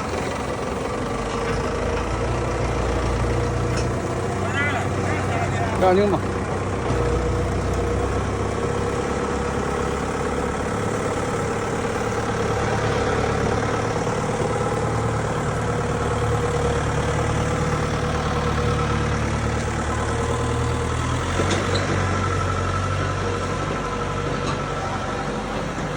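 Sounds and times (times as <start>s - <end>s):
diesel generator engine drone: 0.0s - 25.9s.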